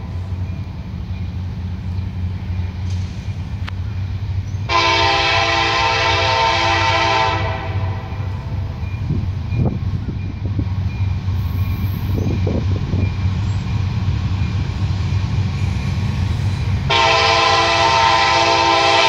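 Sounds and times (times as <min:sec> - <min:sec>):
low rumble of moving train: 0:00.0 - 0:19.0
locomotive air horn blast: 0:04.6 - 0:08.3, 0:16.8 - 0:19.0.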